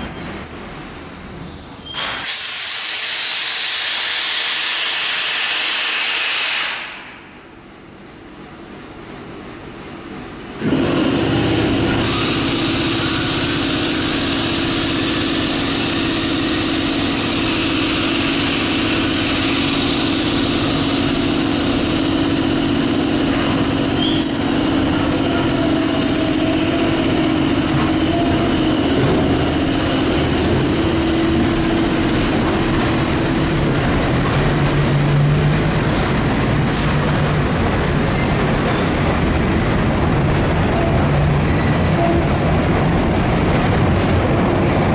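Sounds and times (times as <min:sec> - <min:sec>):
train rail rumble: 0:00.0 - 0:44.9
train motor tone: 0:10.3 - 0:39.0.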